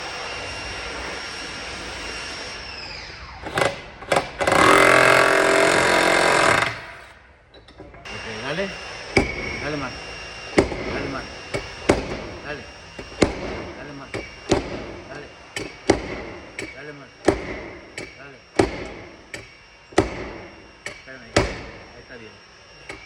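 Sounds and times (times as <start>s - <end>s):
power grinder whining: 0.0s - 7.2s, 8.0s - 23.0s
grinding on sheet metal: 3.5s - 7.2s
sharp knocks: 10.6s - 12.4s, 13.0s - 21.9s.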